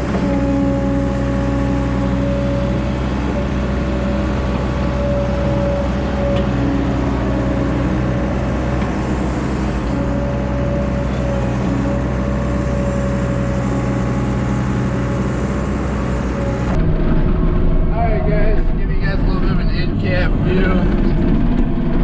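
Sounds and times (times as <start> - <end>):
diesel engine running under load: 0.0 - 22.0.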